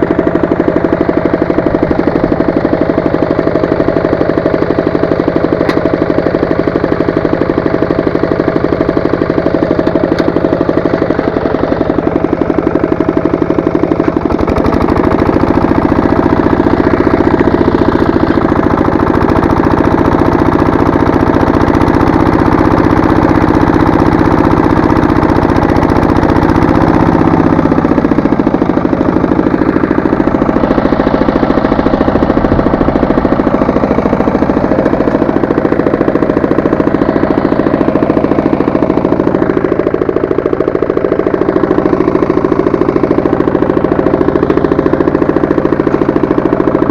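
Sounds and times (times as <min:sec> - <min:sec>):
tractor engine chugging while tilling: 0:00.0 - 0:46.9.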